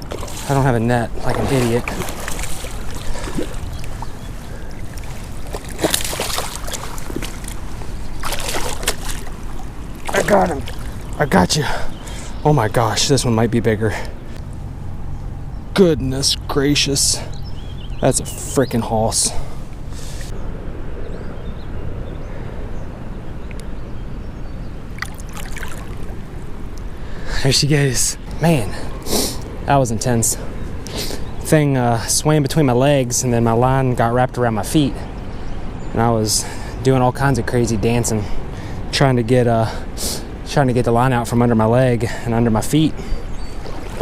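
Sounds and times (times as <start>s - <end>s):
water splashes: 0.0s - 12.3s, 24.9s - 26.5s, 42.8s - 44.0s
flowing river water: 0.0s - 13.4s, 18.8s - 20.3s, 24.8s - 27.3s, 37.7s - 44.0s.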